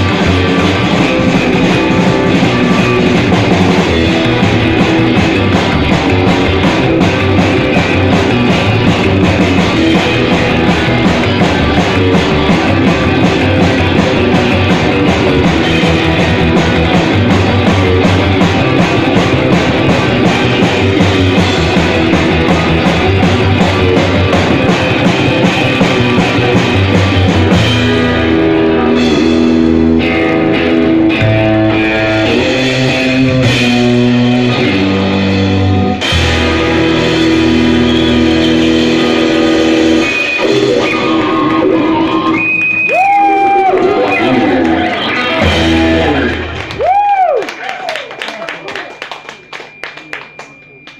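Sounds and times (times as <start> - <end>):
rock band playing: 0.0 - 50.9.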